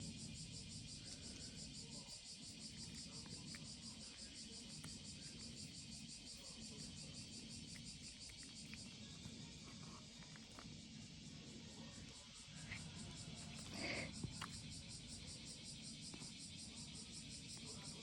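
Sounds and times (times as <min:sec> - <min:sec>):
faint insect chirping: 0:00.0 - 0:18.0.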